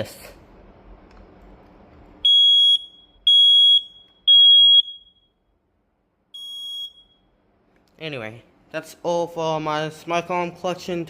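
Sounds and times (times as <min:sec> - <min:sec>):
smoke alarm beeps: 0:02.2 - 0:05.5, 0:06.3 - 0:07.4.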